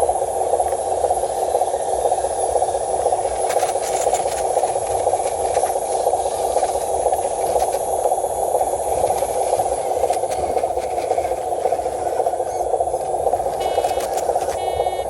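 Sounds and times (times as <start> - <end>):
toy truck motor whirring: 9.3 - 15.0.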